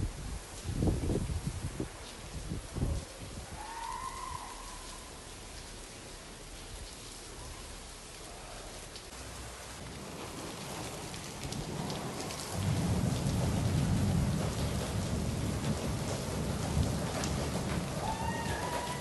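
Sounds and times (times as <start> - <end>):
heavy rain falling: 0.0 - 19.0
thunder rumbling: 9.2 - 19.0.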